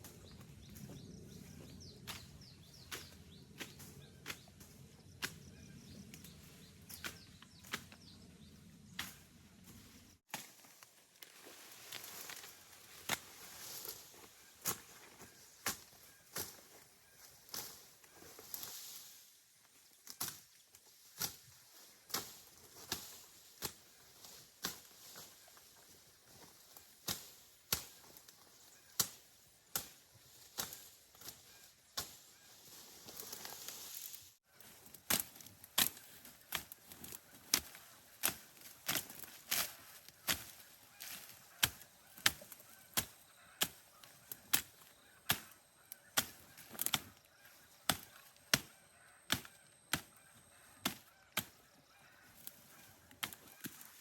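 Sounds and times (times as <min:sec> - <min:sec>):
hand tool chopping vegetation: 0:02.0 - 0:08.2, 0:08.9 - 0:09.3, 0:10.3 - 0:18.7, 0:20.0 - 0:54.0.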